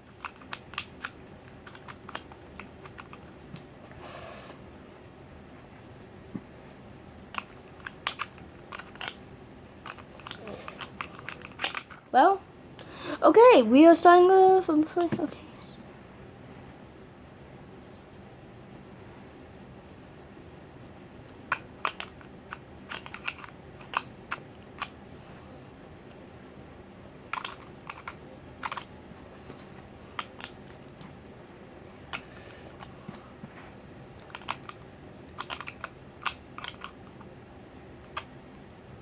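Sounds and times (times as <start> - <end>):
plastic toy pieces clicking: 0.1 - 3.3, 7.3 - 9.2, 9.8 - 12.0, 21.5 - 24.9, 27.3 - 28.9, 34.2 - 37.3.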